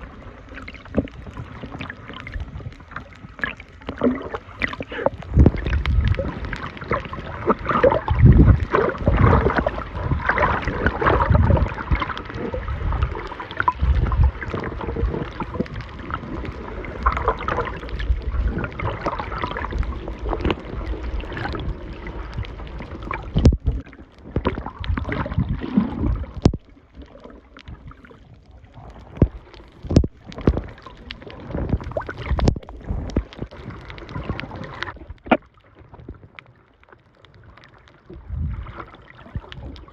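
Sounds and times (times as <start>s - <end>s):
muffled underwater sloshing and bubbling: 0.0s - 39.9s
low underwater thumps: 5.2s - 6.3s, 23.2s - 26.7s, 29.1s - 30.8s, 31.4s - 34.3s
sharp underwater clicks: 13.5s - 28.0s, 28.9s - 36.5s.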